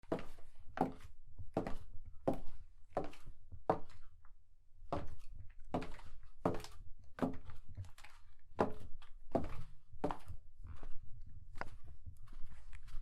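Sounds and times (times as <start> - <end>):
high heels walking: 4.9 - 13.0.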